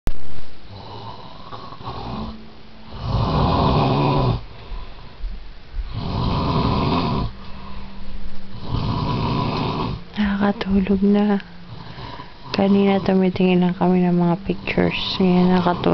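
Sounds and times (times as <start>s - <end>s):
man snoring: 0.7s - 4.4s, 5.8s - 7.4s, 8.5s - 10.4s.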